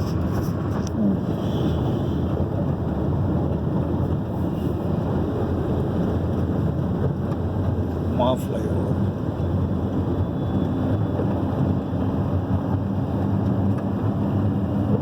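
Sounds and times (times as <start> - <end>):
wind noise on microphone: 0.0 - 8.1
road traffic rumble: 0.0 - 15.0.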